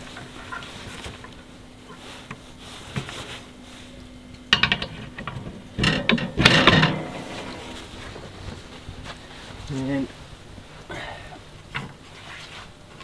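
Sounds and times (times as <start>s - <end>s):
bench parts clattering and knocking: 4.5s - 8.3s.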